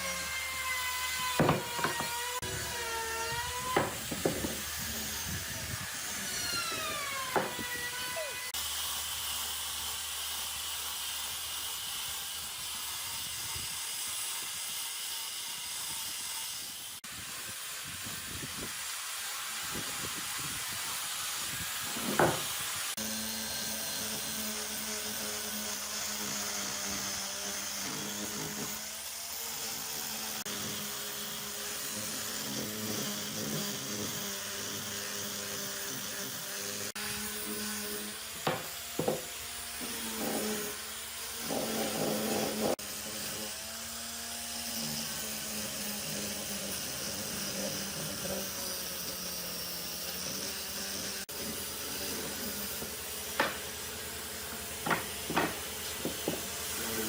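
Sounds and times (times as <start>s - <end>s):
wood knocking on wood: 1.3s - 2.2s, 3.6s - 4.6s, 7.3s - 7.7s, 22.0s - 22.5s, 38.4s - 39.3s, 53.4s - 53.6s, 54.8s - 56.5s.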